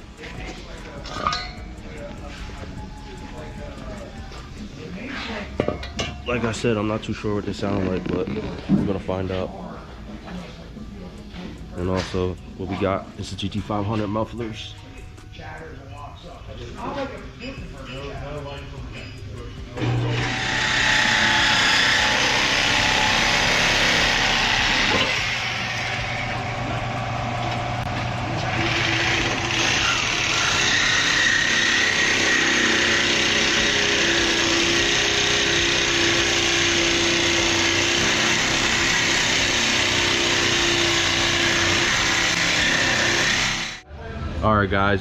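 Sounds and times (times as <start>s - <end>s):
power tool running: 19.7s - 43.8s.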